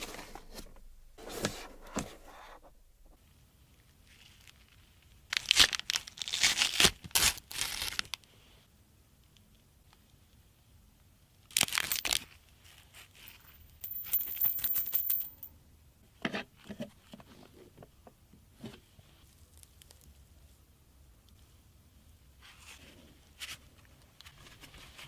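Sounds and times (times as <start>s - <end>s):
plastic packaging tearing and crinkling: 5.3s - 8.2s, 11.5s - 12.2s.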